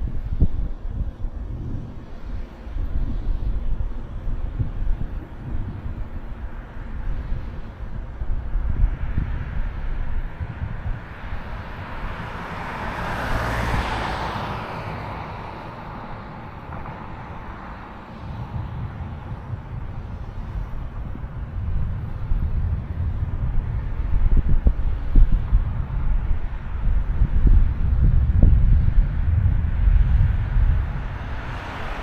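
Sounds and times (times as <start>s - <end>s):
wind buffeting microphone: 0.0s - 32.0s
car tyre hiss passing: 1.4s - 32.0s.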